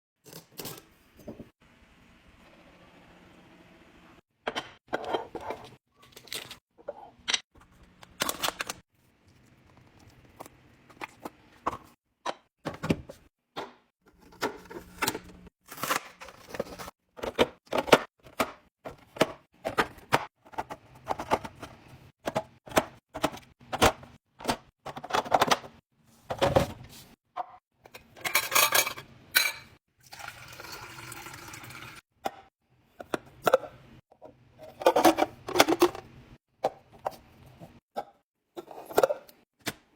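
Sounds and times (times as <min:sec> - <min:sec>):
containers clicking and clinking: 0:27.8 - 0:33.7.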